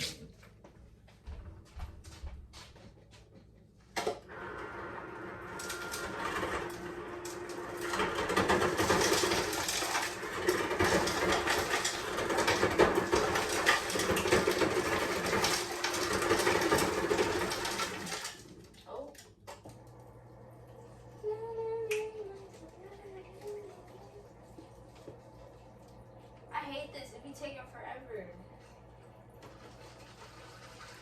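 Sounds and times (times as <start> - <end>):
water running into a cup: 29.3 - 31.0.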